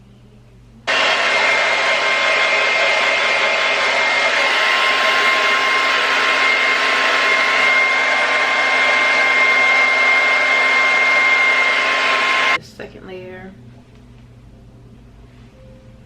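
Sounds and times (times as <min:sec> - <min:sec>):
hair dryer running: 0:00.9 - 0:12.6.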